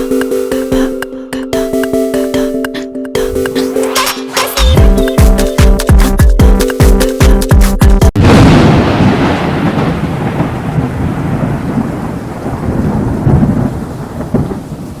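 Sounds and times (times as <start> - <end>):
loud crash: 8.2 - 10.6.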